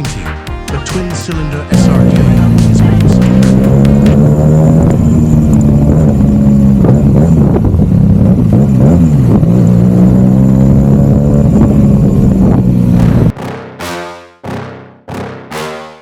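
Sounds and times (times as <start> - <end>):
motorcycle engine running: 1.7 - 13.3.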